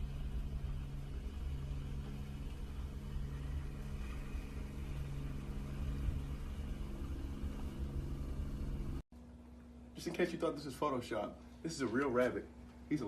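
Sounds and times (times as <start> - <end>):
held low tones: 0.0 - 10.0
low mechanical hum: 0.0 - 13.0.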